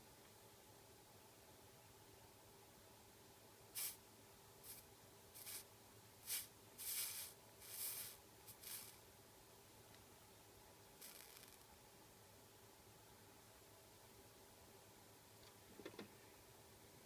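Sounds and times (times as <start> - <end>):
soldering iron sizzling: 3.8 - 4.0, 4.6 - 9.0, 11.0 - 11.7.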